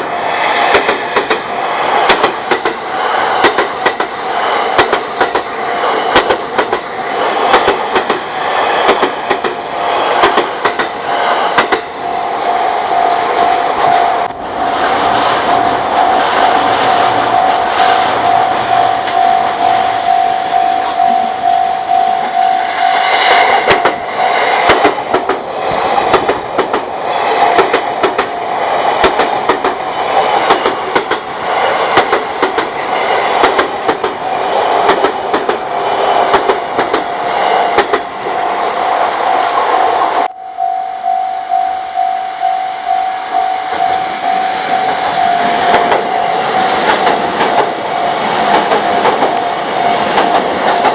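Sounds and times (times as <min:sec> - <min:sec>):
train wheels clicking on rails: 0:00.0 - 0:38.4, 0:43.7 - 0:50.9
level crossing warning bell: 0:11.0 - 0:24.6, 0:40.2 - 0:46.9, 0:47.6 - 0:50.9.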